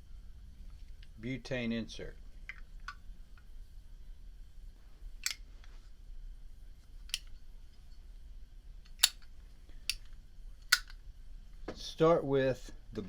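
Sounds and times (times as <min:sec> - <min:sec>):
lighter clicks: 0:08.9 - 0:11.0.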